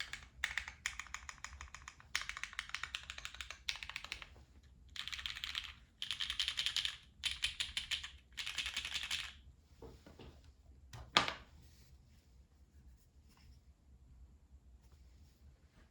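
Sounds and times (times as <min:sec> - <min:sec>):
mechanical keyboard typing: 0:00.0 - 0:04.3, 0:04.9 - 0:09.4.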